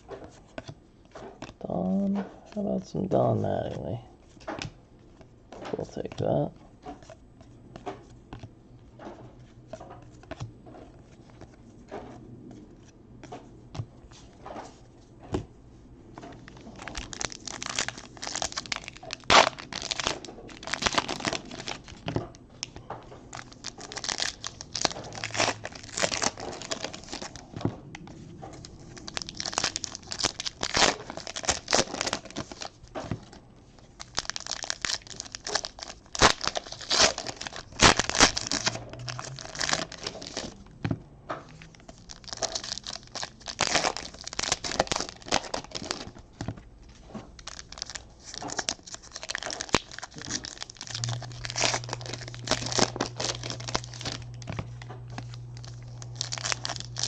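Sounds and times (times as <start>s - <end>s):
wrappers tearing and crinkling: 16.4s - 22.0s, 23.3s - 27.6s, 28.5s - 32.8s, 34.0s - 40.6s, 41.6s - 46.3s, 47.4s - 57.0s.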